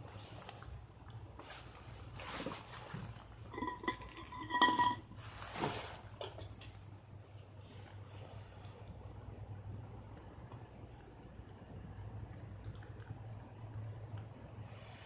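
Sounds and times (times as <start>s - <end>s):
metal cookware clinking: 3.5s - 5.2s.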